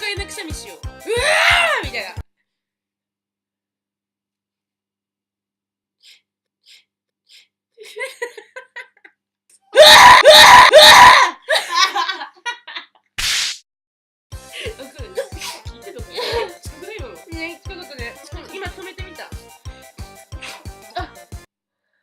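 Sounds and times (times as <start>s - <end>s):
women laughing: 7.8s - 9.2s, 9.8s - 13.0s, 14.6s - 16.6s, 20.9s - 21.2s.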